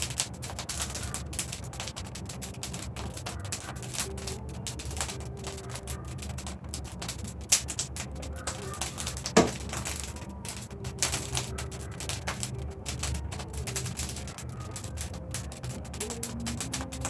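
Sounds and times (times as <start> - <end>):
bonfire crackling: 0.0 - 17.0.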